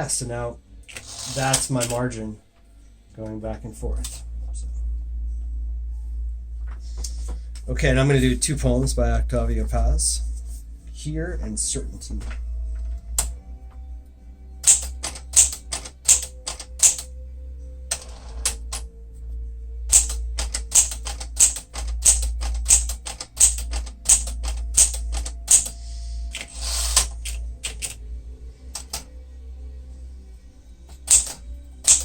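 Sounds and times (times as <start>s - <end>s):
typewriter carriage sliding: 0.9s - 2.0s, 14.6s - 17.1s, 19.9s - 28.0s, 30.9s - 32.0s
typewriter keystrokes: 0.9s - 2.0s, 14.6s - 17.1s, 17.9s - 18.8s, 19.9s - 28.0s, 28.8s - 29.1s, 30.9s - 32.0s.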